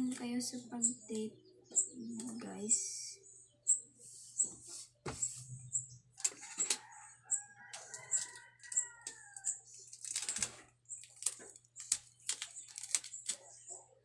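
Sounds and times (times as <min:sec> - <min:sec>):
small bird chirping: 0:00.0 - 0:14.0
rooster crowing: 0:06.2 - 0:09.6
paper handling clicks and rustles: 0:07.7 - 0:08.8, 0:09.6 - 0:13.6.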